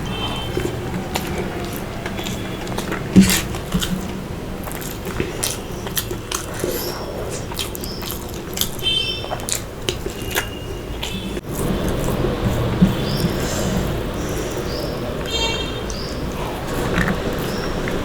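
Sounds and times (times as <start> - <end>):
person chewing food: 0.0 - 18.0
wet mouth clicks: 0.0 - 18.0.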